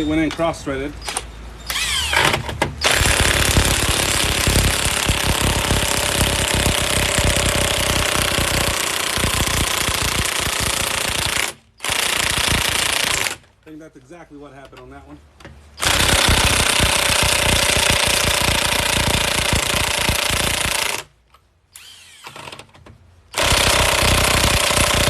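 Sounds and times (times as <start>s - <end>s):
impact wrench hammering: 2.2s - 13.4s, 15.8s - 21.0s, 23.4s - 25.0s.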